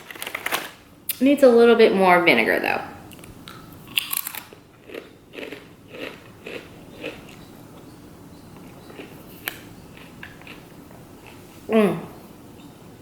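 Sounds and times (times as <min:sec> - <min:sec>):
person chewing food: 0:03.1 - 0:11.5.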